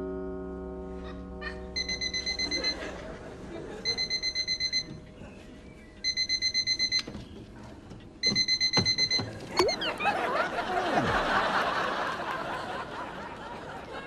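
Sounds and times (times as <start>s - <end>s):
alarm clock beeping: 1.8s - 2.9s, 3.8s - 5.0s, 6.0s - 7.1s, 8.2s - 10.0s.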